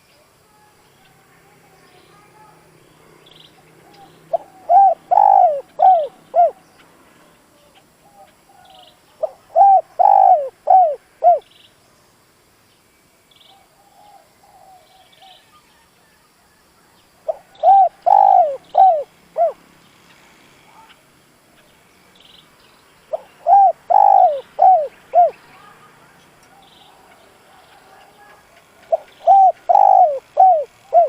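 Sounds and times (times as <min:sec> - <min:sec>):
dove cooing: 0:03.5 - 0:06.6, 0:08.0 - 0:11.4, 0:13.6 - 0:15.4, 0:17.2 - 0:19.6, 0:23.1 - 0:25.8, 0:26.5 - 0:31.0.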